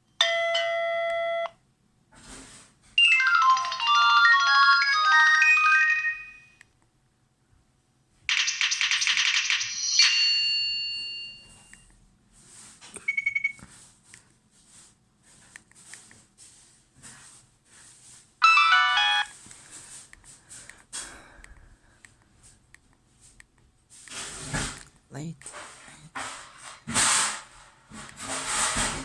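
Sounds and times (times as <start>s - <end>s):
fast phone jingle: 3.0s - 6.6s, 18.4s - 19.3s
phone chiming ringtone: 3.0s - 6.6s, 8.3s - 11.7s, 13.1s - 13.6s, 18.4s - 19.3s
phone beeps: 13.0s - 13.7s, 18.4s - 19.3s.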